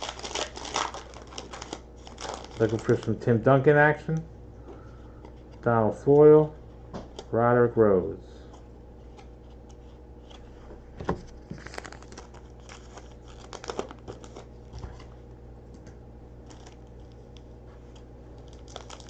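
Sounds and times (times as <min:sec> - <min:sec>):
cards being handled: 0:00.0 - 0:03.3, 0:08.5 - 0:15.1
foil wrapper crinkling and tearing: 0:00.0 - 0:03.5, 0:11.4 - 0:14.6, 0:16.4 - 0:19.0
steady low hum: 0:00.0 - 0:19.0.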